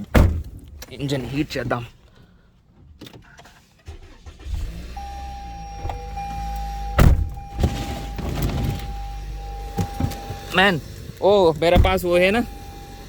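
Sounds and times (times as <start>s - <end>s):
loud thump: 0.1s - 0.8s, 6.9s - 8.8s
car engine starting and idling: 2.0s - 13.0s.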